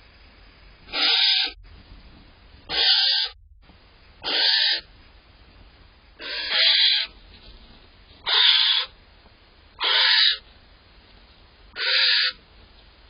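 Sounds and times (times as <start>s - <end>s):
owl hissing screech calls: 0.9s - 1.6s, 2.7s - 3.4s, 4.2s - 4.9s, 6.2s - 7.1s, 8.2s - 8.9s, 9.8s - 10.4s, 11.7s - 12.4s.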